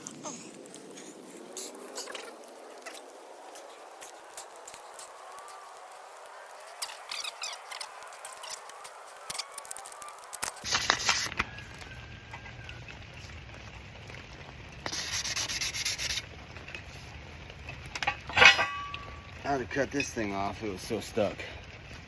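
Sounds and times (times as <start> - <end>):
loud hissy bursts: 10.5 - 11.4, 14.9 - 16.2.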